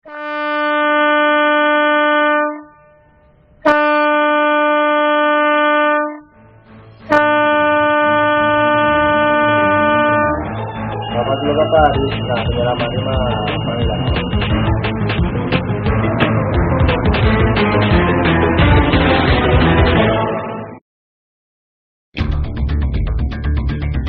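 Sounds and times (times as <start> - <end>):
boat horn blasts: 0.0 - 6.4, 7.1 - 14.6.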